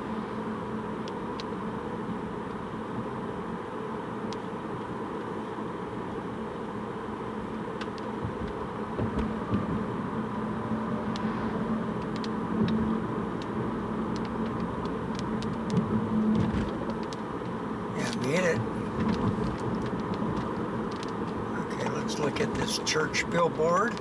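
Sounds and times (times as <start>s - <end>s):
car engine and tyre hum: 0.0s - 24.0s
light ticks: 12.0s - 12.8s, 13.4s - 15.9s, 19.0s - 21.4s.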